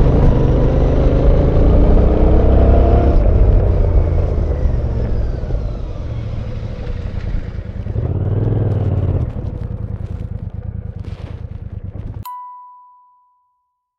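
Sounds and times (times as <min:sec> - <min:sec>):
motorcycle engine: 0:00.0 - 0:12.2
high chime: 0:12.2 - 0:13.9.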